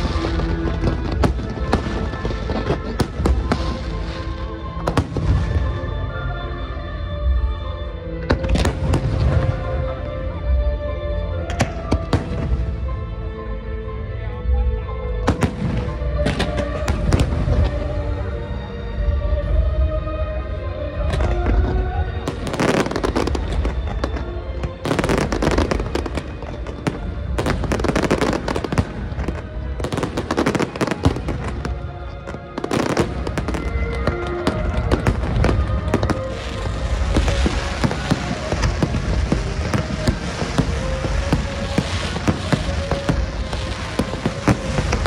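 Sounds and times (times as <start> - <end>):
fireworks crackle: 0.0 - 5.9, 22.2 - 45.0
fireworks bursting and booming: 0.0 - 6.1, 8.2 - 10.1, 11.5 - 12.8, 15.2 - 18.3, 20.9 - 45.0
music playing: 0.0 - 45.0.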